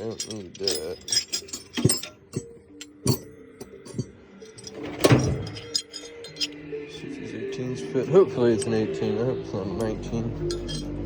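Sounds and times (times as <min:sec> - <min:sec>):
metal tools clinking: 0:00.0 - 0:06.7, 0:08.5 - 0:09.0, 0:09.6 - 0:11.0
background music: 0:00.0 - 0:11.0.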